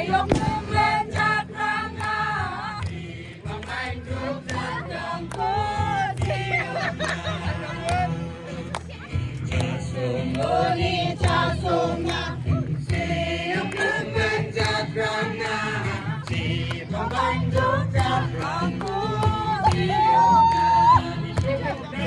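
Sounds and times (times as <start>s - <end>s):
low musical accompaniment: 0.0s - 22.0s
voices singing together: 0.0s - 22.0s.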